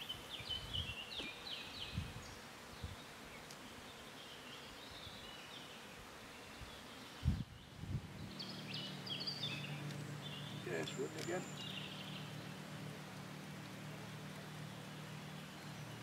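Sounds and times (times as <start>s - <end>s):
high chirping calls: 7.3s - 12.6s
riverside ambience: 7.6s - 16.0s.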